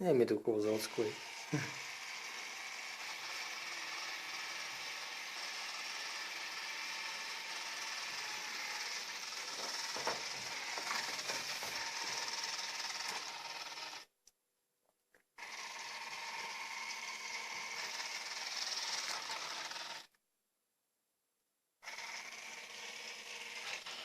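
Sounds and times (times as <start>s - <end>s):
robot vacuum whirring: 0.6s - 14.1s, 15.4s - 20.2s, 21.8s - 24.0s
vacuum knocking against obstacles: 9.5s - 11.8s.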